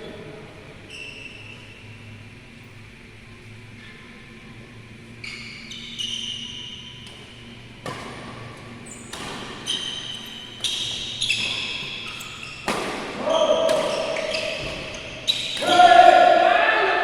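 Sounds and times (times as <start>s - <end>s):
low hall hum: 0.0s - 17.0s
sports shoes squeaking: 0.8s - 2.8s, 5.1s - 16.2s
rackets hitting shuttlecock: 6.9s - 16.3s.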